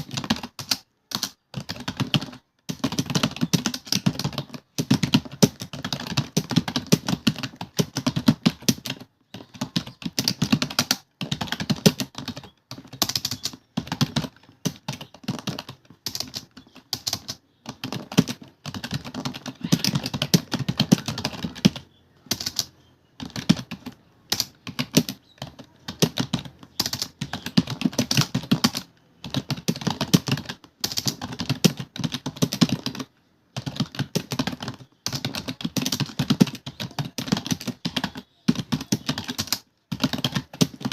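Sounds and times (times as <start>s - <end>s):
fast typing on keyboard: 0.0s - 40.9s.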